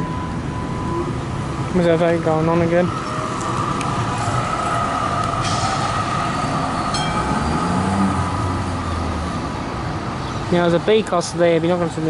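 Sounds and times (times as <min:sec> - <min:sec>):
tram motor whine: 0:00.0 - 0:10.1
tram wheels rumbling on rails: 0:01.0 - 0:10.1.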